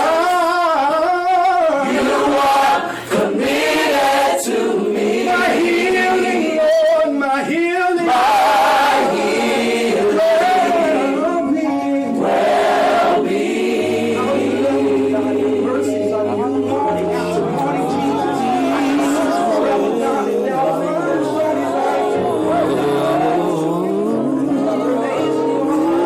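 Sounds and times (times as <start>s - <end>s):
church choir singing: 1.2s - 26.0s.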